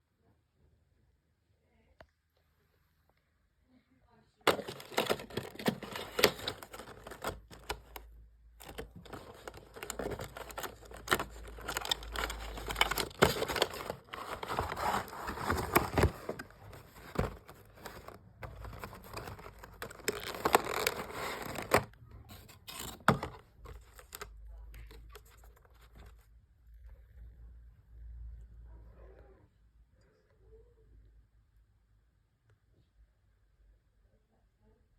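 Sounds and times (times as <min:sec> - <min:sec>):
packaging crinkling and tearing: 0:04.5 - 0:26.1.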